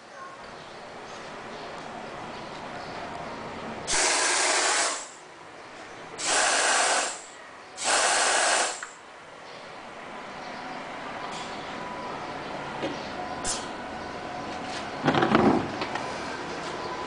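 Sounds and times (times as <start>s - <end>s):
compressed air hissing: 3.9s - 5.2s, 6.2s - 9.0s, 13.4s - 13.8s.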